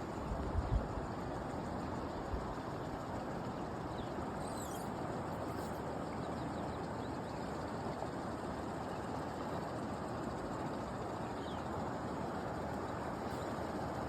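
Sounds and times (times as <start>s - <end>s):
faint bird chirps: 3.8s - 7.8s, 11.1s - 11.8s.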